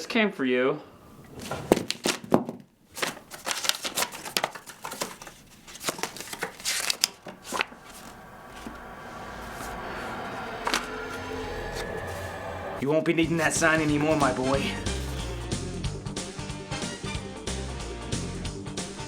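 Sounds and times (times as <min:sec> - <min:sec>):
paper crinkling and tearing: 0:02.9 - 0:08.0
low steady hum: 0:06.7 - 0:15.6.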